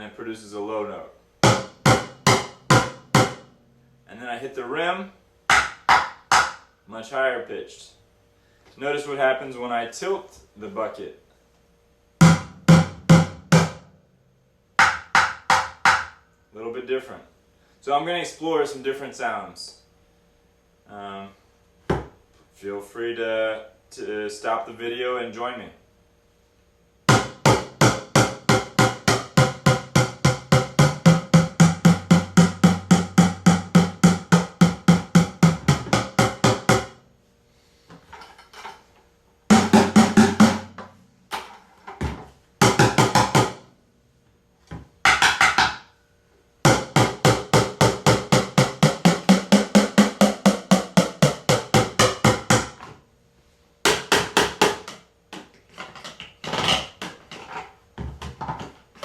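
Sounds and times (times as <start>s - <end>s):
bucket drumming: 1.4s - 3.5s, 5.5s - 6.6s, 12.2s - 13.9s, 27.1s - 37.0s, 39.5s - 40.9s, 42.6s - 43.7s, 45.1s - 45.8s, 46.7s - 52.8s, 53.9s - 55.0s.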